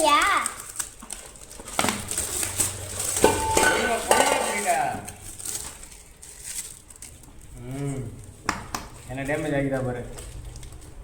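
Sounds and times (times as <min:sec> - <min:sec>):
mixer jars clinking and knocking: 0:03.2 - 0:04.7.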